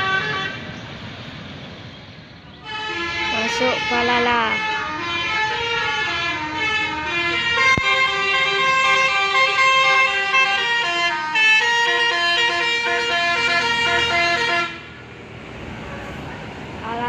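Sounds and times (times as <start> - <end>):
bus air horns playing a melody: 0.0 - 0.8, 2.6 - 15.0.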